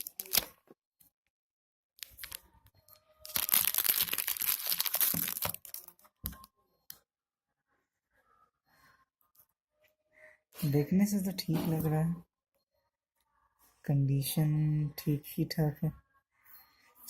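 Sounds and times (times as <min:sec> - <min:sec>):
plastic and paper crinkling: 0:00.0 - 0:00.6, 0:02.0 - 0:02.5, 0:03.2 - 0:06.4.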